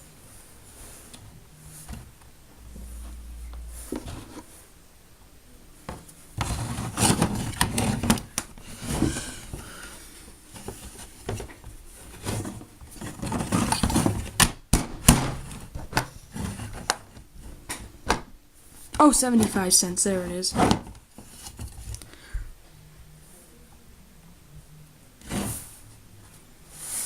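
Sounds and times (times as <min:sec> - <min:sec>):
rustling: 0:00.0 - 0:04.8, 0:05.9 - 0:14.4.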